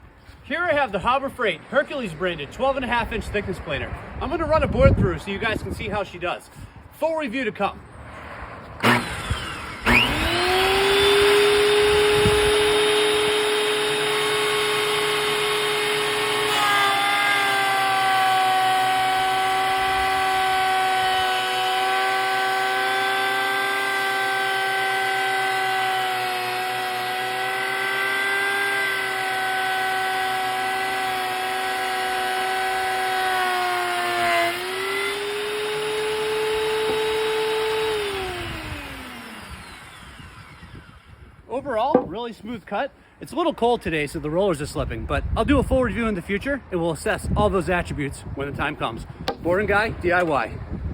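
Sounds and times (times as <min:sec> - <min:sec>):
planer cutting board: 0:08.8 - 0:40.0, 0:41.9 - 0:42.2, 0:49.3 - 0:49.7
planer motor whining: 0:08.8 - 0:41.4.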